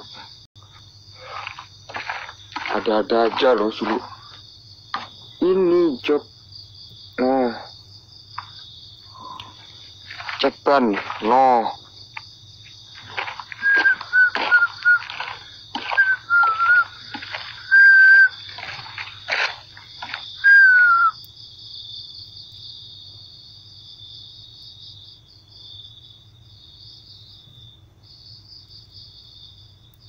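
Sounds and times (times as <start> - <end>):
crickets chirring: 0.0 - 30.0
short whistle-like notes: 13.6 - 15.0, 16.0 - 16.9, 17.7 - 18.4, 20.4 - 21.2.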